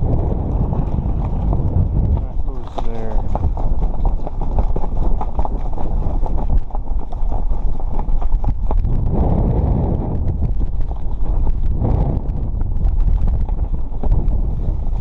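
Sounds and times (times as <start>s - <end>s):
footstep-like crunches: 0.0s - 6.8s
wind buffeting microphone: 0.0s - 15.0s.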